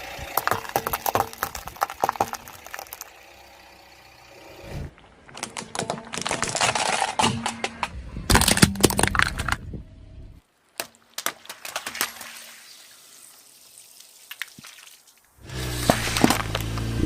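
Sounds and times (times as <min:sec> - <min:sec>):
objects crushed under car tyre: 0:00.1 - 0:03.2, 0:05.3 - 0:09.7, 0:15.6 - 0:17.0.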